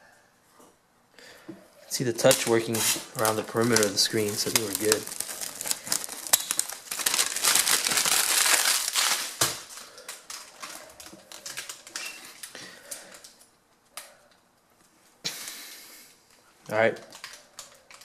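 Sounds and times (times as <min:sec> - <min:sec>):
hands rustling and crinkling: 0:02.2 - 0:13.4.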